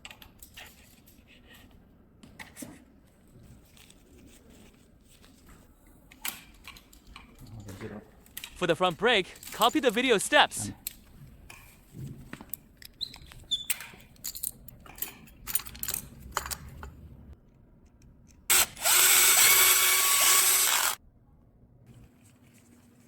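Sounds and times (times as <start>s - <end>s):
power driver running: 18.5s - 21.0s.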